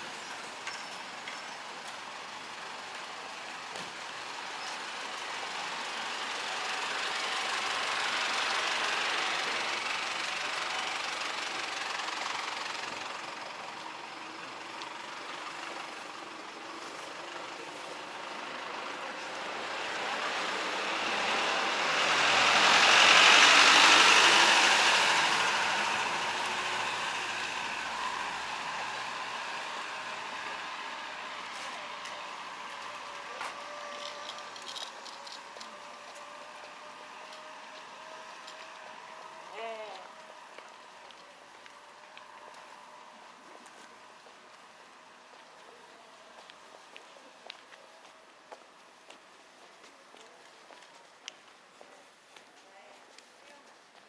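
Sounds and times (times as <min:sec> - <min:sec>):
vehicles passing: 0:00.0 - 0:54.0.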